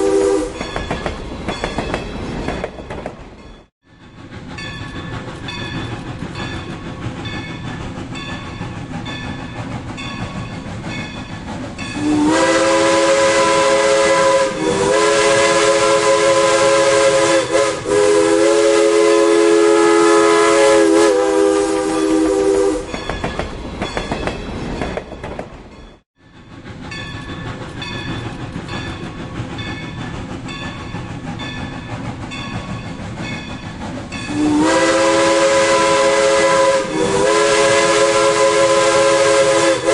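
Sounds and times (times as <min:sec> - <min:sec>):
steam train whistle: 0:00.0 - 0:00.6, 0:12.0 - 0:23.0, 0:34.3 - 0:39.9
train wheels clattering over rails: 0:00.5 - 0:12.4, 0:22.8 - 0:39.8.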